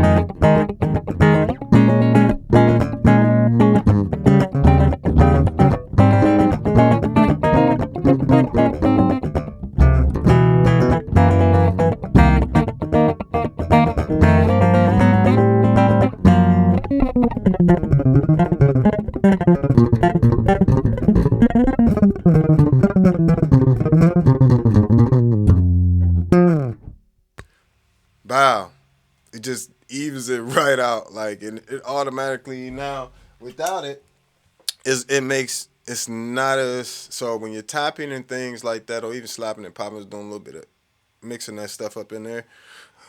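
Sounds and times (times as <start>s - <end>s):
electric bass guitar: 0.0s - 27.0s.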